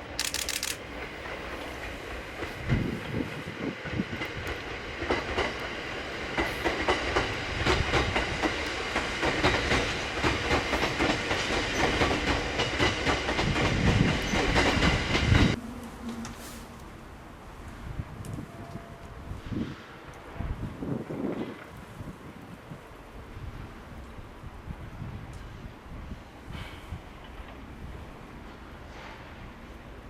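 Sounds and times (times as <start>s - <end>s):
train wheels clattering over rail joints: 0.0s - 15.6s
low train rumble: 0.0s - 30.0s.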